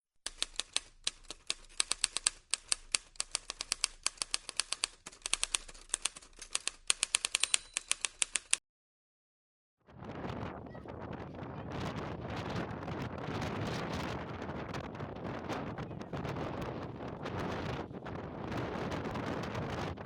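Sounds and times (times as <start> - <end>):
typewriter keys clacking: 0.2 - 8.6.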